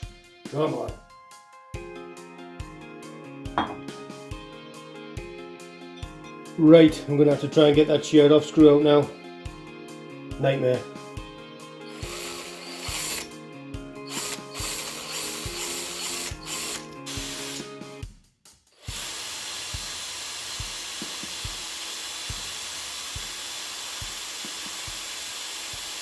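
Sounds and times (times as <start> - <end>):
background music beat: 0.0 - 25.2
power drill boring metal: 11.8 - 13.4, 14.0 - 17.8, 18.8 - 26.0.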